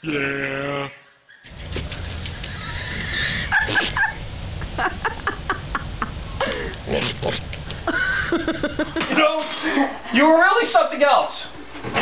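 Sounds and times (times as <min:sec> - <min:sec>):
low background rumble: 0:01.5 - 0:09.0.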